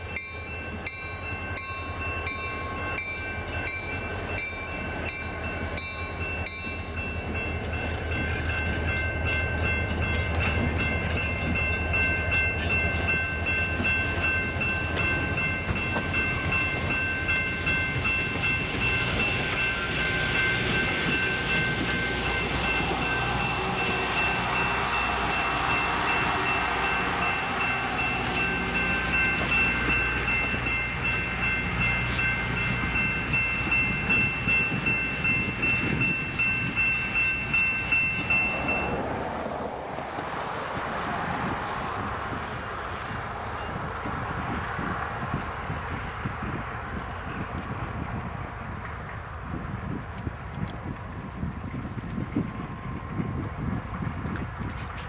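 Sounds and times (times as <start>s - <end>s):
steady high tones: 0.0s - 39.0s
diesel locomotive rumble: 0.0s - 55.0s
train rushing noise: 0.0s - 55.0s.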